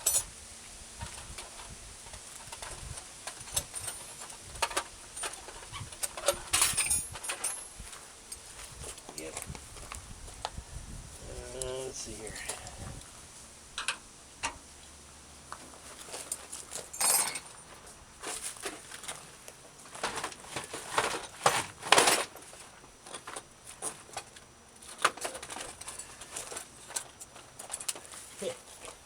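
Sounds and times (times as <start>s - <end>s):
metal hand tools clinking: 6.1s - 7.7s, 16.8s - 17.7s.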